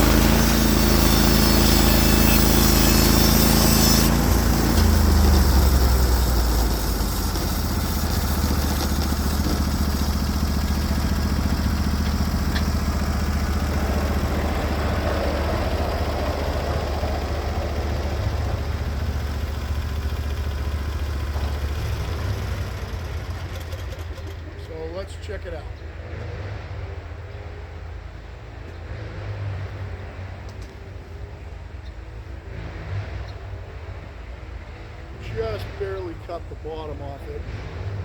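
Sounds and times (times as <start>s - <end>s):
bandsaw cutting hiss: 0.0s - 14.8s
engine idling: 0.0s - 25.9s.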